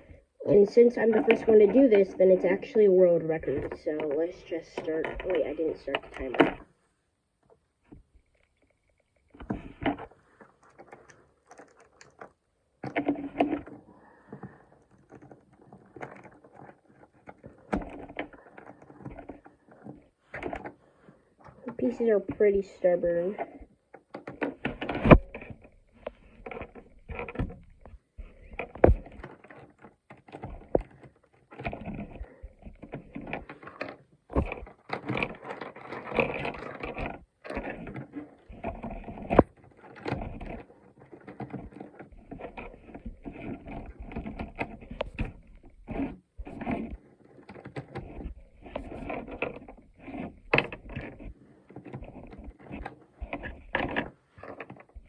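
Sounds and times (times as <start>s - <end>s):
plastic pieces scraping: 0.0s - 6.8s, 7.4s - 55.0s
plastic cube pieces clicking and snapping: 9.4s - 20.7s.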